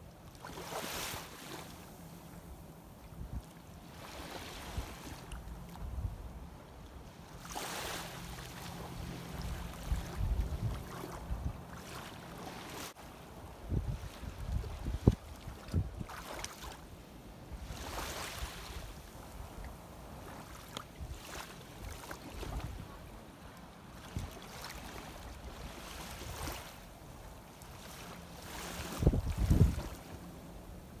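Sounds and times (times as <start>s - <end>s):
shallow seawater sloshing: 0.3s - 2.3s, 3.4s - 5.9s, 6.8s - 13.2s, 13.8s - 16.9s, 17.5s - 31.0s
wind rumbling on microphone: 4.2s - 6.5s, 8.8s - 11.7s, 13.4s - 16.2s, 21.8s - 23.0s, 28.6s - 31.0s.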